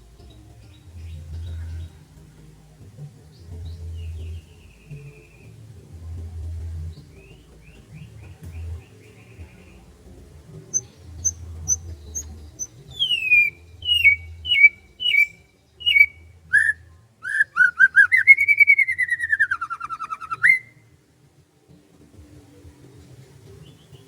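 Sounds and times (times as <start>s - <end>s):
songbird singing: 0.0s - 21.1s, 21.7s - 24.0s.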